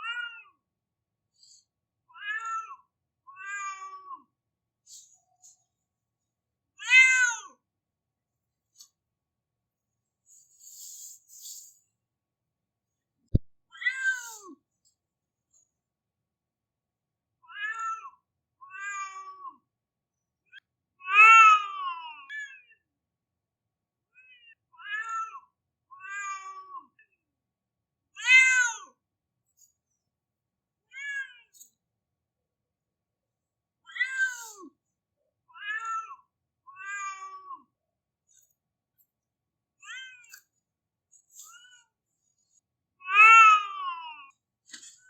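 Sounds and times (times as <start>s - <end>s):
cat crying meows: 2.1s - 2.8s, 3.4s - 4.2s, 6.8s - 7.5s, 13.8s - 14.5s, 17.5s - 18.1s, 18.7s - 19.6s, 21.0s - 22.6s, 24.8s - 25.4s, 26.0s - 26.9s, 28.2s - 28.9s, 33.9s - 34.7s, 35.5s - 36.2s, 36.8s - 37.6s, 43.0s - 44.3s.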